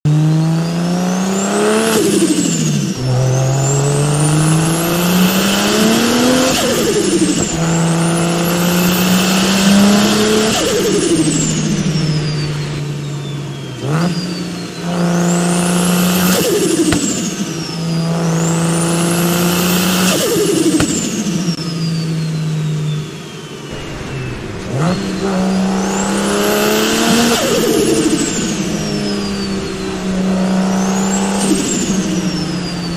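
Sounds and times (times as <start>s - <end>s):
car engine revving: 0.1s - 21.9s, 23.6s - 32.9s
turbo whistles: 21.5s - 32.9s.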